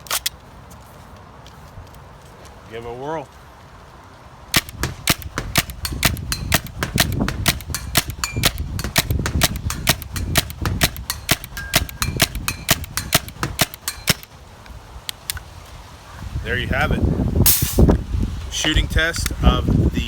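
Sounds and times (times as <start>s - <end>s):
paintball marker shots: 4.6s - 14.3s.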